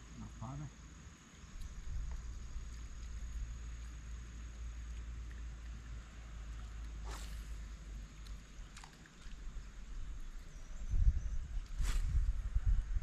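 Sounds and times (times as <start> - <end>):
thin insect whine: 0.1 - 5.3, 6.2 - 8.1
wind rumble on microphone: 1.6 - 3.7, 9.4 - 13.0
short swish: 7.0 - 7.8, 11.8 - 12.3.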